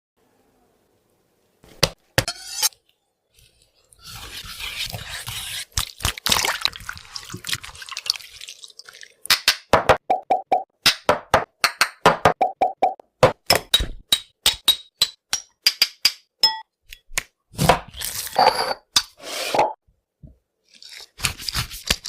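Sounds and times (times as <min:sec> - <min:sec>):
rubbing or mixing noise: 0:02.3 - 0:09.0.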